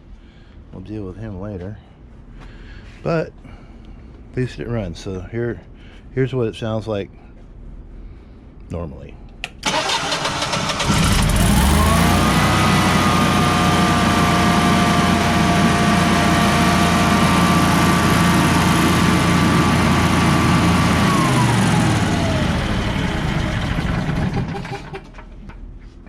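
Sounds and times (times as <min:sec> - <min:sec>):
generator engine running with whine: 0:09.7 - 0:25.6.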